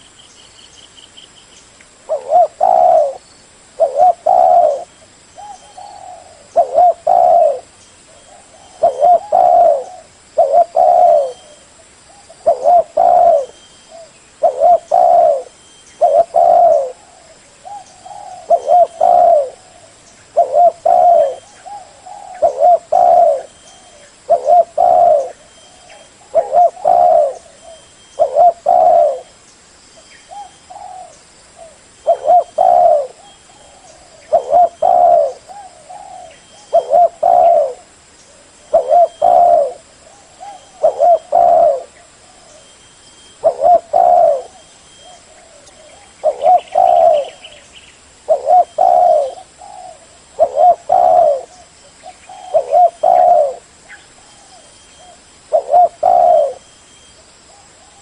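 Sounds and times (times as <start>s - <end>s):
dove cooing: 2.1s - 3.2s, 3.8s - 29.4s, 30.3s - 58.0s.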